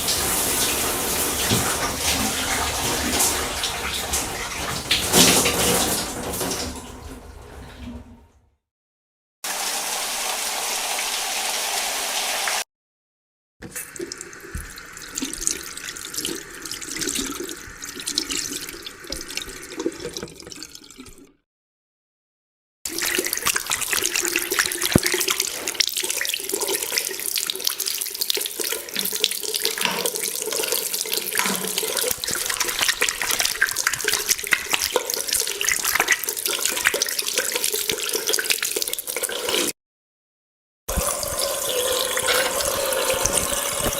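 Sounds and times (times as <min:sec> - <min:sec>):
water rushing: 0:00.0 - 0:06.6, 0:09.5 - 0:12.6, 0:31.7 - 0:36.8, 0:40.9 - 0:43.9
tap running into sink: 0:00.0 - 0:07.2, 0:23.4 - 0:25.8, 0:40.9 - 0:43.9.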